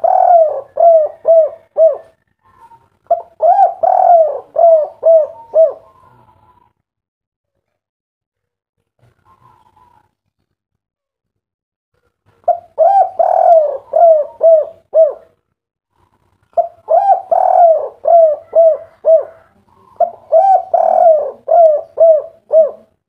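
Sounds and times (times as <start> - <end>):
dove cooing: 0.0 - 6.8, 12.4 - 23.0.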